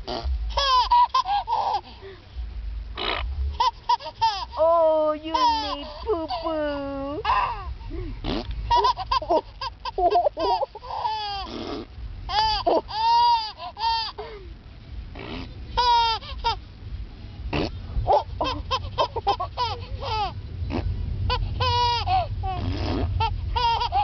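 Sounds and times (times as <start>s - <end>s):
low rumble: 0.0s - 24.0s
baby babbling and squealing: 3.9s - 7.7s, 18.1s - 20.3s, 21.3s - 24.0s.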